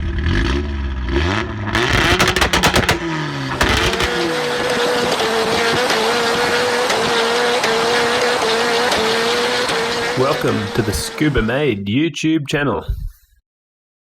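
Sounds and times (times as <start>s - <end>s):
car engine revving down: 0.0s - 11.5s
quick sharp clicks: 1.8s - 4.2s.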